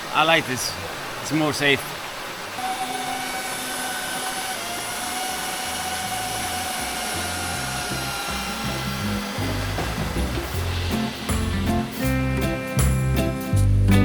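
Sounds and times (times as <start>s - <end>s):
drone propellers whining: 2.5s - 12.9s
music with stepping bass line: 9.4s - 14.0s.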